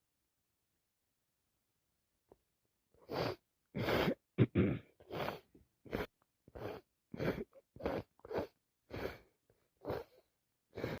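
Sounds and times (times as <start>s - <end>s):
person sneezing: 3.1s - 9.1s.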